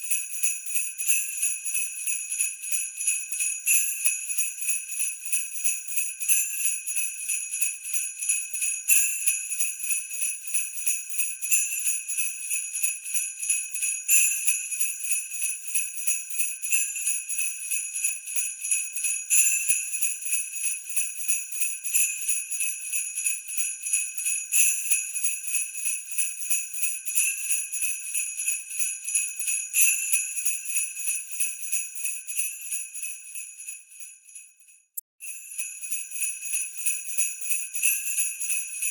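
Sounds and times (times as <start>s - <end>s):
sleigh bells jingling: 35.2s - 38.9s.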